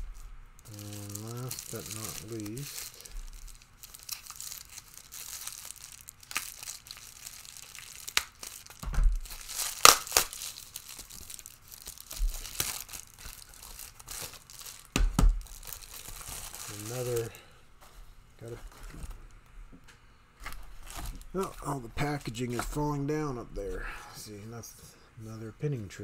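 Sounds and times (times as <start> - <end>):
packaging crinkling and tearing: 0.0 - 17.4, 20.4 - 22.9.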